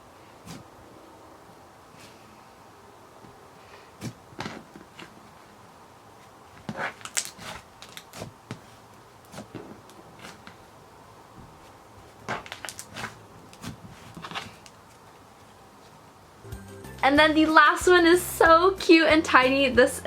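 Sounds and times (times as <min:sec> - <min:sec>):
slime squishing and crackling: 0:06.7 - 0:08.3, 0:12.4 - 0:14.6.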